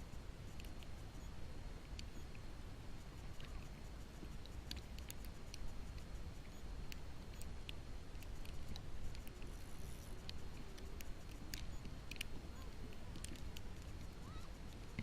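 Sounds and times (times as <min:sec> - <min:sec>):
faint ticks: 0:00.0 - 0:15.0.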